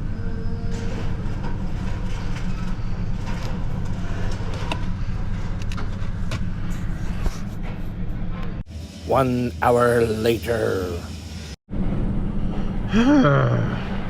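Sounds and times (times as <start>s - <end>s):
vehicle rumble: 0.0s - 8.6s.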